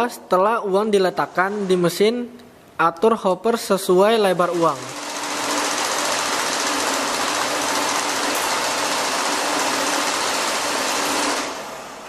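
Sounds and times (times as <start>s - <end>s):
banknote counting machine whirring: 4.4s - 11.9s.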